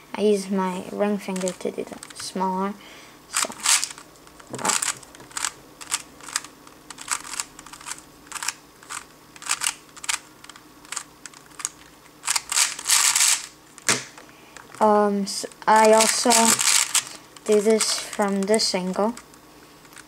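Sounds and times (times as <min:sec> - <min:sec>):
plastic puzzle cube clacking: 0:01.3 - 0:02.2, 0:03.4 - 0:14.1, 0:15.7 - 0:20.0.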